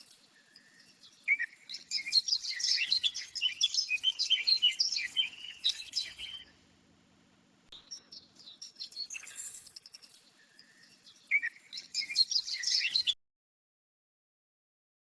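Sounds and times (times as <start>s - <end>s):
bird chirps and twitters: 0.0s - 6.5s, 7.8s - 13.2s.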